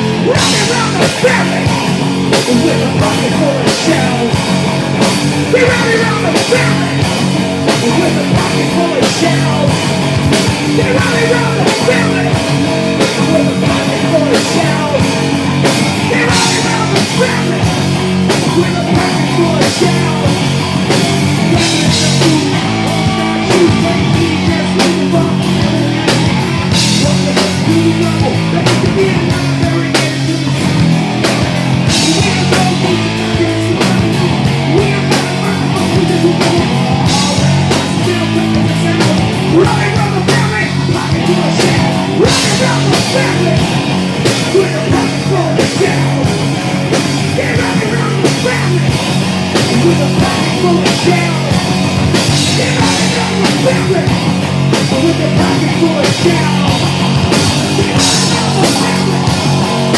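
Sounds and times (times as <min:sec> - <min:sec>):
bass guitar: 0:00.0 - 0:59.9
distorted electric guitar: 0:00.0 - 0:59.9
drum kit beat: 0:00.0 - 0:59.9.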